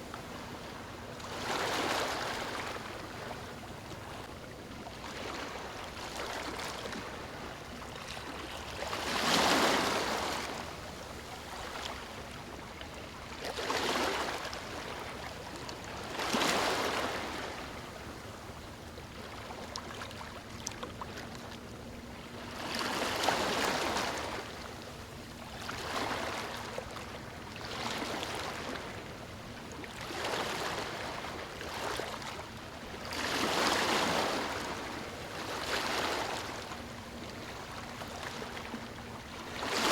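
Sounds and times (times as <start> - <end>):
ocean waves breaking: 0.0 - 3.5, 5.0 - 12.4, 25.6 - 29.1, 29.9 - 39.9.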